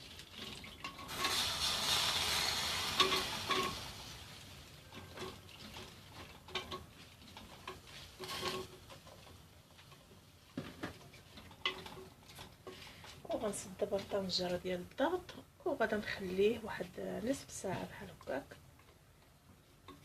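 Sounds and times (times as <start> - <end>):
stirring in a pot: 0.0 - 15.2.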